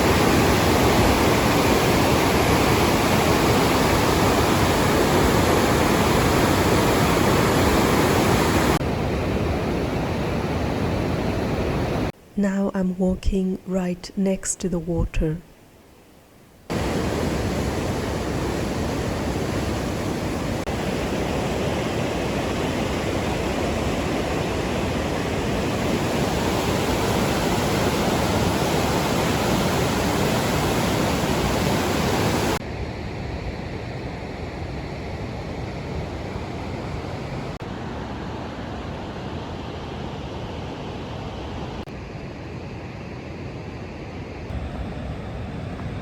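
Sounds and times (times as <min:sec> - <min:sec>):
water rushing through channel: 0:00.0 - 0:08.8.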